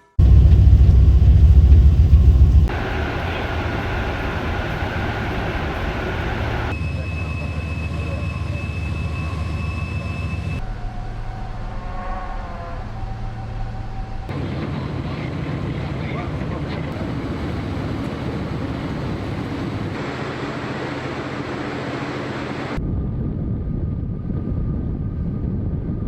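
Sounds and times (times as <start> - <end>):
thin high whine: 0.0 - 14.3
engine rumble: 0.0 - 23.0.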